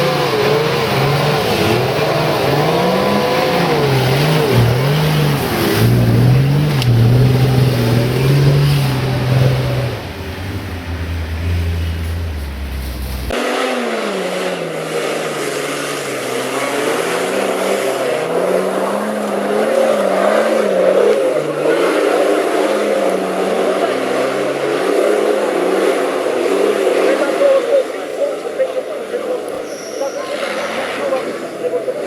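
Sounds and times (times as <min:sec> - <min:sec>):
off-road vehicle engine revving: 0:00.0 - 0:32.0.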